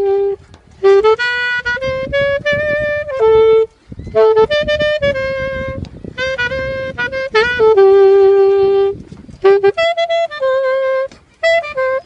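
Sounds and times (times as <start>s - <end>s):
solo saxophone melody: 0.0s - 12.0s.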